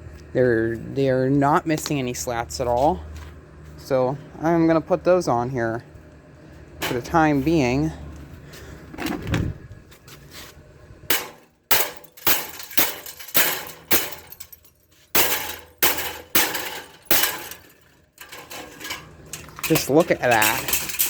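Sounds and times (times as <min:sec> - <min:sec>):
wrench cracking plastic fan grill: 0:11.1 - 0:14.6, 0:15.2 - 0:21.0.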